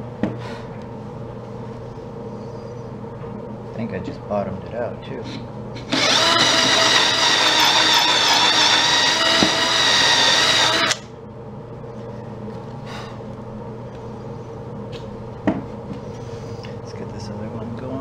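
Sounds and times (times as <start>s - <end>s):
power drill whine: 5.9s - 11.1s.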